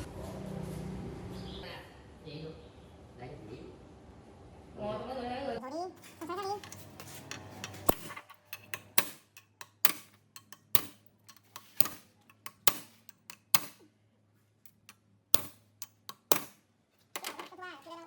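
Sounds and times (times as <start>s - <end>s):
sharp knocks: 14.7s - 16.6s.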